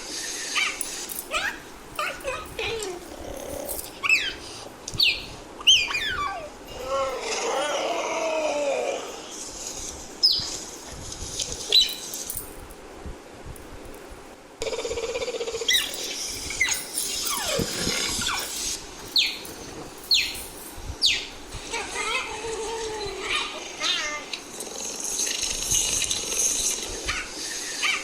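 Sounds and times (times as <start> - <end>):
cheetah chirping: 3.5 - 6.5, 14.6 - 19.5, 20.1 - 20.4.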